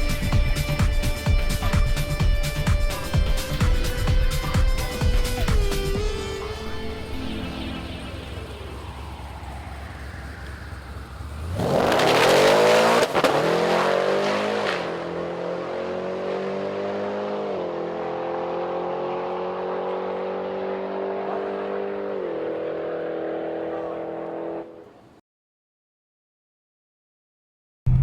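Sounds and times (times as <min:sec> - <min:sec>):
drag car engine launching: 0:06.4 - 0:14.9.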